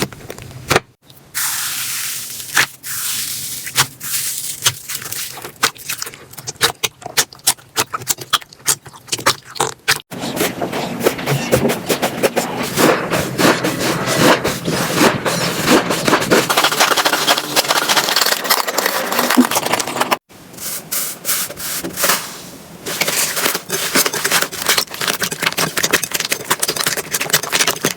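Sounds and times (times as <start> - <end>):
slime squishing and crackling: 2.3 - 10.1, 23.1 - 27.9.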